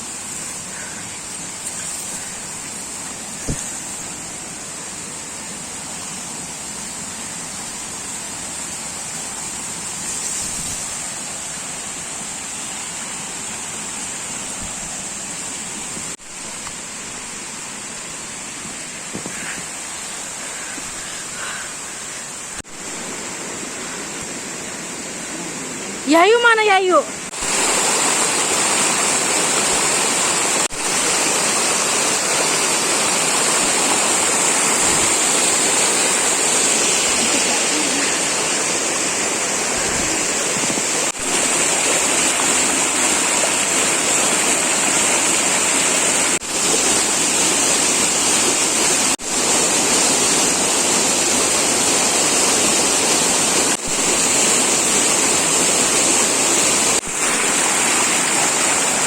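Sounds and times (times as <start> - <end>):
waterfall pouring: 27.2 - 59.0.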